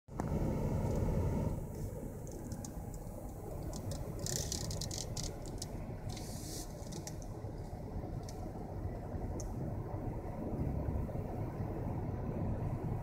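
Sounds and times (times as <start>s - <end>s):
vehicle rumbling on road: 0.1s - 13.0s
light clicks and rattles: 2.2s - 8.5s.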